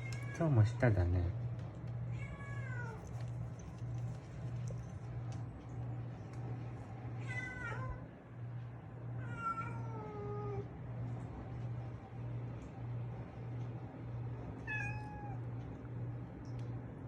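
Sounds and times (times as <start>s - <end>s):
low pulsing hum: 0.0s - 17.0s
cat meowing: 2.1s - 3.1s, 7.2s - 8.0s, 9.2s - 10.7s, 14.6s - 15.4s.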